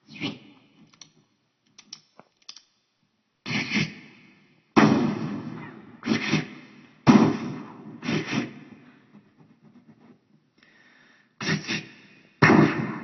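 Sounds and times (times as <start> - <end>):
man imitating gunshots: 3.4 - 4.1, 4.8 - 8.8, 11.4 - 13.0.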